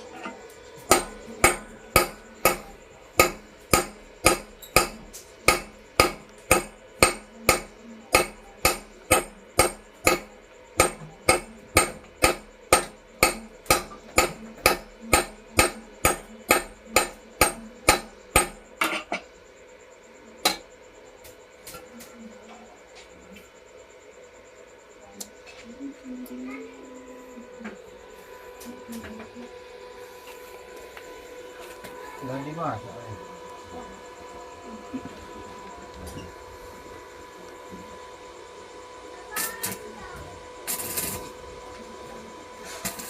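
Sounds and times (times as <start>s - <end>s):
hammer striking metal on anvil: 0.9s - 19.2s.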